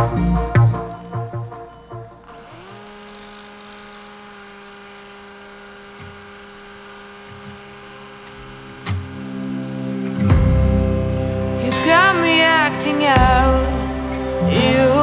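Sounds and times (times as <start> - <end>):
electric hum: 0.0 - 13.9.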